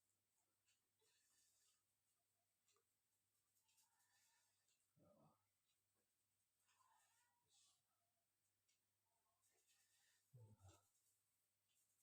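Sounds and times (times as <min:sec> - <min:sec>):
faint soft rustles: 0:08.7 - 0:12.0.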